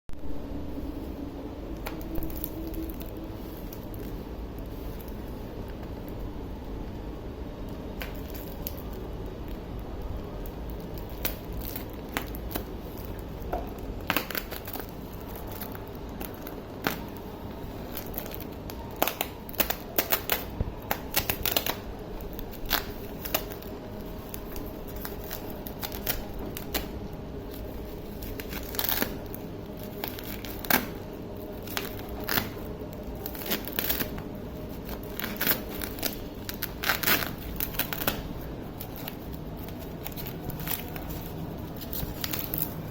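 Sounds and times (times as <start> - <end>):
low background hum: 0.1 - 42.9
packaging clicks and rustles: 7.6 - 42.9.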